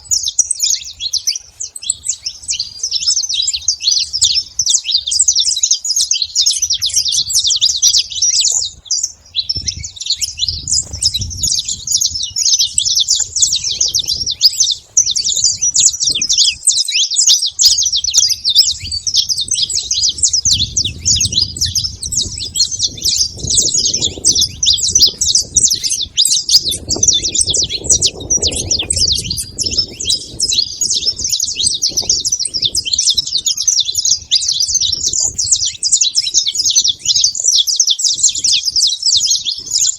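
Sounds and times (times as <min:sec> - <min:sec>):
flock of finches chirping: 0:00.0 - 0:39.9.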